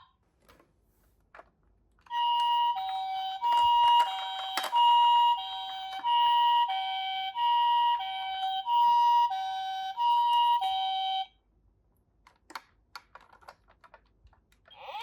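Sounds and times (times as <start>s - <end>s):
toy electronic siren hi-lo: 2.1s - 11.3s.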